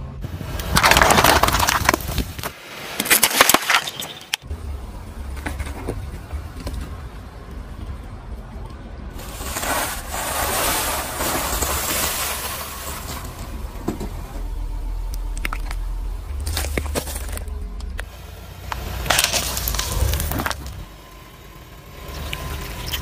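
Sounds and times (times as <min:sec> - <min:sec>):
low rumble of car: 0:00.0 - 0:02.5, 0:04.0 - 0:23.0
tyres crushing objects: 0:00.3 - 0:04.5, 0:09.2 - 0:18.1, 0:18.7 - 0:20.9
sharp cracks and snaps: 0:00.6 - 0:04.4, 0:15.1 - 0:15.8.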